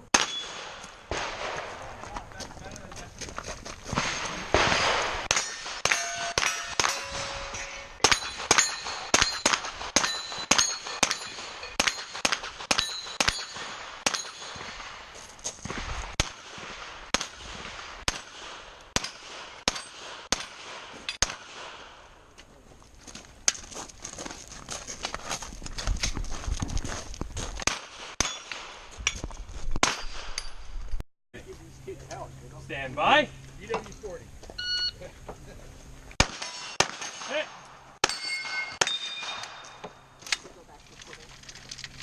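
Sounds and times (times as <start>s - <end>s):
metallic clang of steel targets: 0.1s - 0.9s, 4.0s - 14.8s, 19.0s - 20.1s, 28.2s - 29.2s, 29.8s - 30.8s, 36.2s - 40.2s
rapid gunshots: 3.9s - 7.0s.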